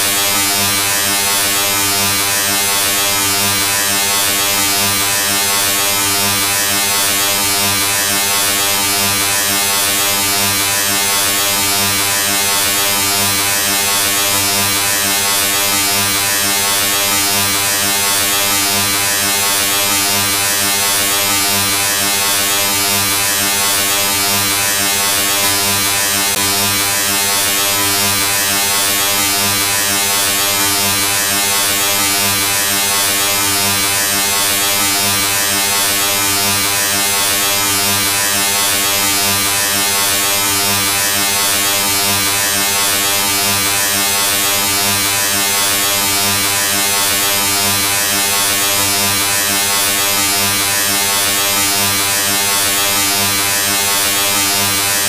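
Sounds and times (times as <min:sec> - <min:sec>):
electric buzz drone: 0:00.0 - 0:55.0.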